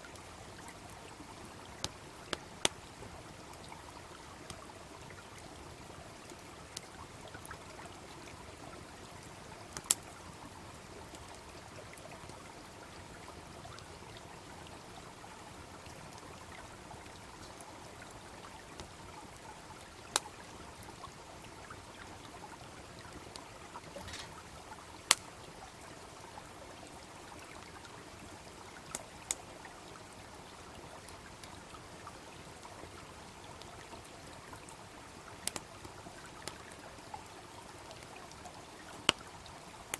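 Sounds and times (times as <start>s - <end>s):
babbling brook: 0.0s - 39.9s
bonfire popping: 23.9s - 24.5s.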